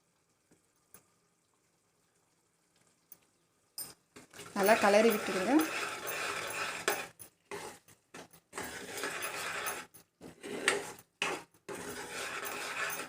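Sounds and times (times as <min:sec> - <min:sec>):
spoon scraping a pan: 0:04.2 - 0:13.0.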